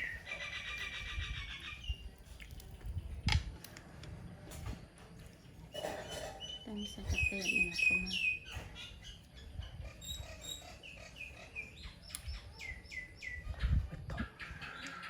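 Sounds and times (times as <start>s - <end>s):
animal chirping: 6.2s - 13.7s.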